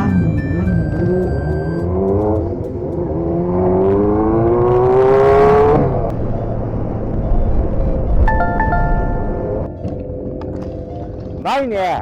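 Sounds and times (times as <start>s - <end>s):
motorcycle engine accelerating: 0.0s - 8.3s.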